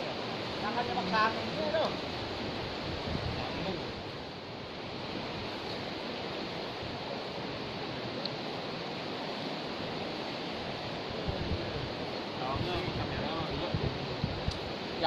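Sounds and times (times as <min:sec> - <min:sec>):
river rushing: 0:00.0 - 0:15.0.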